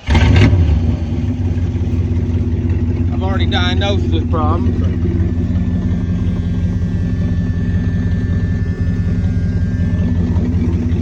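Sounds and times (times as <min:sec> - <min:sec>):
car engine idling: 0:00.0 - 0:11.0
exhaust leak slapping: 0:00.0 - 0:11.0.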